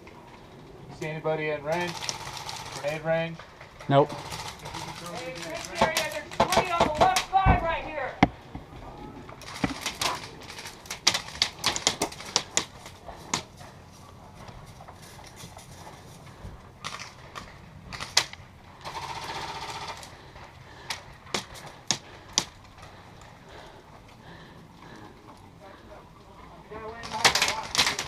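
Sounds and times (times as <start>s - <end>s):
full-auto airsoft burst: 17.9s - 20.2s.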